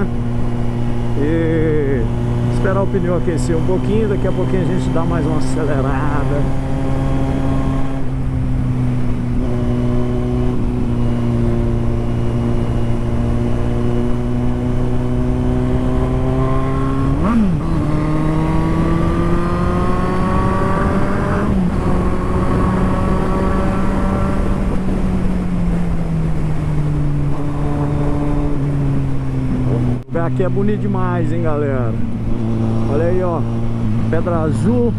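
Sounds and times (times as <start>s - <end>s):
motorcycle engine revving: 0.0s - 34.9s
wind rushing over microphone: 0.0s - 34.9s.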